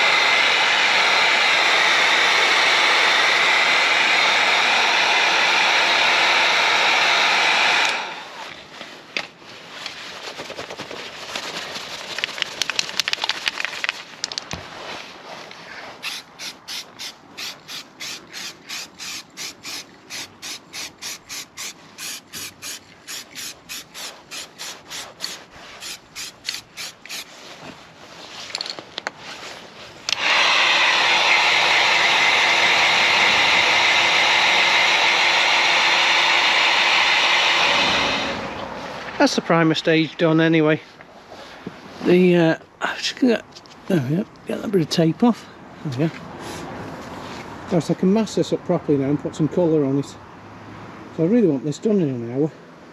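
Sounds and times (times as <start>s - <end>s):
hot air gun running: 0.0s - 8.4s, 16.0s - 27.4s, 30.1s - 38.5s
aerosol can ball rattling: 16.0s - 27.3s.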